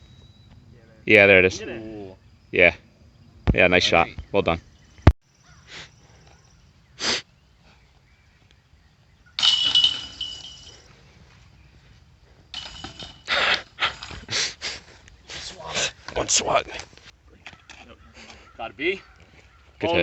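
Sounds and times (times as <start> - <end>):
disc rattling basket chains: 9.4 - 11.3, 12.3 - 14.4.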